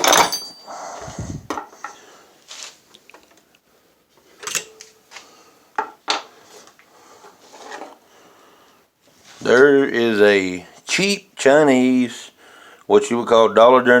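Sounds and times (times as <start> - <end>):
metal wrenches clinking: 0.0 - 0.8.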